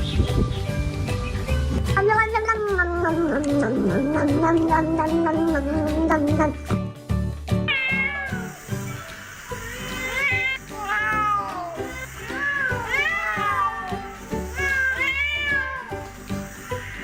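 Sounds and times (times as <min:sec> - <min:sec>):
background music: 0:00.0 - 0:17.0
cat meowing: 0:07.7 - 0:08.6, 0:09.6 - 0:16.0.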